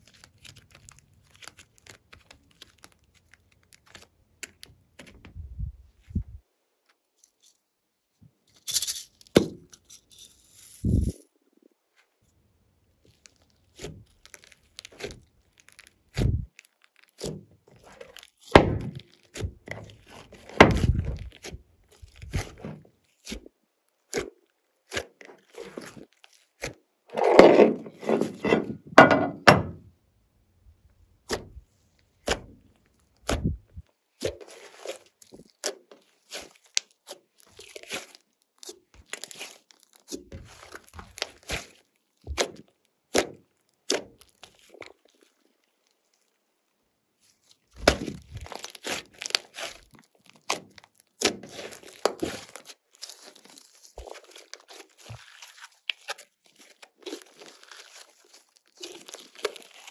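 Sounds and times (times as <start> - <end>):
slime clicking and squelching: 0.0 - 5.2, 12.9 - 26.8, 31.2 - 46.4, 47.2 - 59.9.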